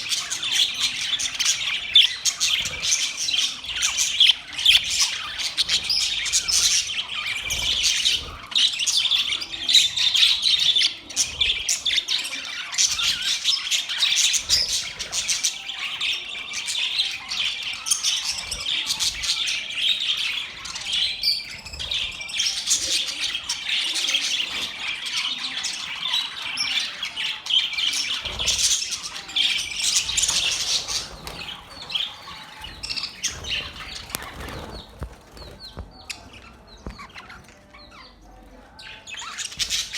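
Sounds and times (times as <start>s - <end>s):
budgerigars chattering: 0.0s - 39.9s.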